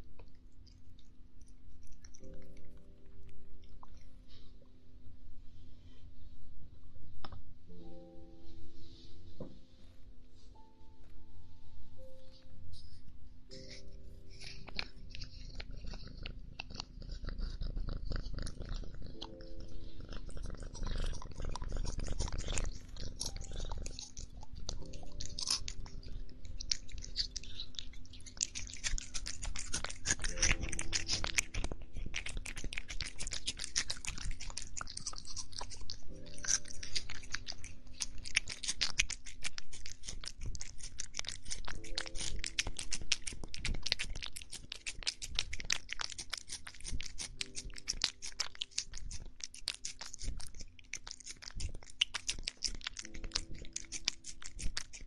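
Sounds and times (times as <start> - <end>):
cat crunching food: 0.0 - 4.5, 12.8 - 55.0.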